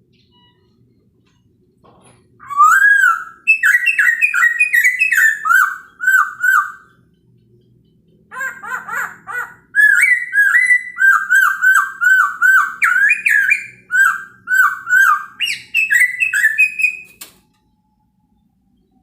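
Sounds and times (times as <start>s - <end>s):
bird singing slurred whistles: 2.4s - 6.8s, 9.8s - 17.2s.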